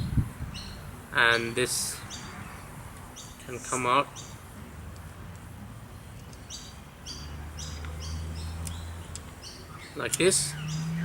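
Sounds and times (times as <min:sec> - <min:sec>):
small bird chirping: 0:02.0 - 0:04.5, 0:06.1 - 0:11.0.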